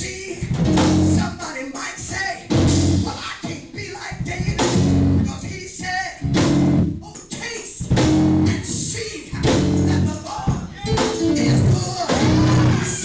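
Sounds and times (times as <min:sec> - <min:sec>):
live band music: 0:00.0 - 0:05.5, 0:06.2 - 0:13.0
heavy full chords: 0:00.5 - 0:01.3, 0:02.5 - 0:03.2, 0:06.2 - 0:07.0, 0:08.0 - 0:08.6, 0:10.9 - 0:13.0.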